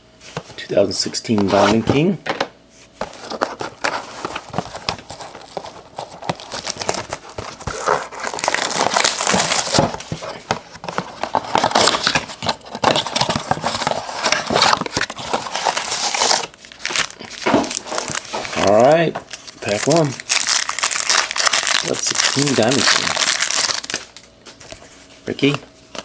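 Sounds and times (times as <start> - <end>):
cardboard rustling and tapping: 3.0 - 15.8
plastic wrapping crinkling: 3.1 - 26.0.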